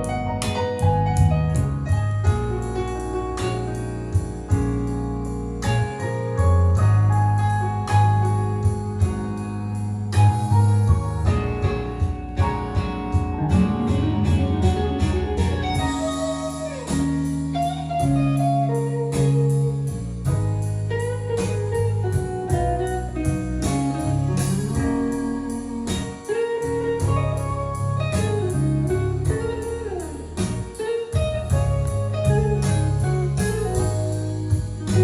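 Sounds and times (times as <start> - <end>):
guitar music with sliding notes: 11.2 - 35.0.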